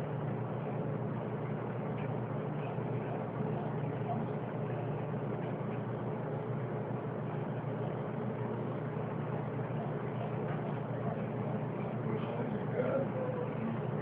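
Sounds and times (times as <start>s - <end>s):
low mechanical hum: 0.0s - 14.0s.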